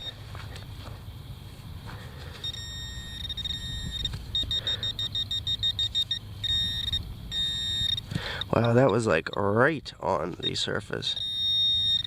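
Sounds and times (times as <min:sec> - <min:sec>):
pinpointer high tone and beeping: 0:02.4 - 0:09.6, 0:10.3 - 0:12.0.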